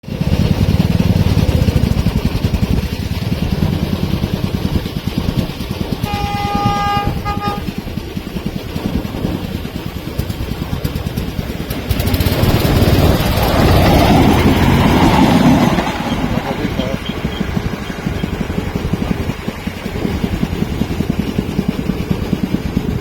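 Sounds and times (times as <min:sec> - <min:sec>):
rail vehicle engine pulsing: 0:00.0 - 0:23.0
train horn blasts: 0:06.0 - 0:07.8.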